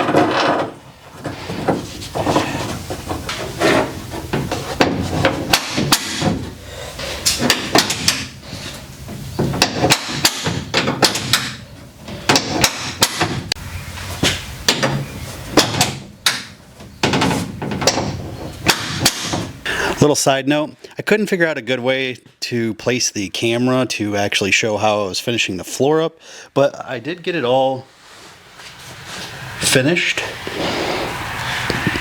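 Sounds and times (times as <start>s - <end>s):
hammering and knocking: 0.0s - 6.6s, 7.3s - 8.3s, 9.4s - 11.6s, 12.2s - 13.6s, 14.2s - 19.6s.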